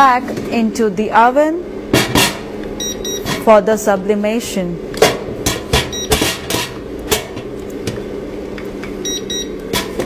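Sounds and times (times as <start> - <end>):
machine hum: 0.0 - 10.0
short electronic beeps: 2.8 - 3.2, 9.0 - 9.5.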